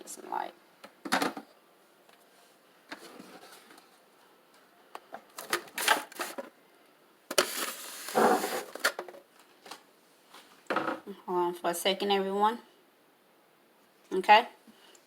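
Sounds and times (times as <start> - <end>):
rustling scrapes: 7.4 - 8.8.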